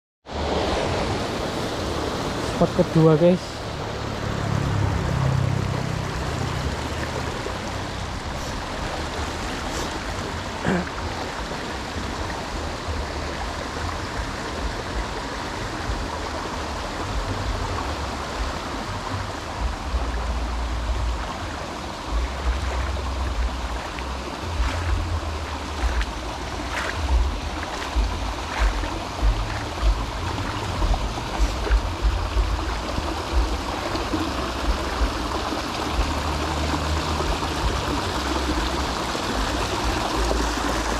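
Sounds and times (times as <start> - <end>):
stream water flowing: 0.2 - 40.9
low rumbling bumps on microphone: 22.1 - 36.2.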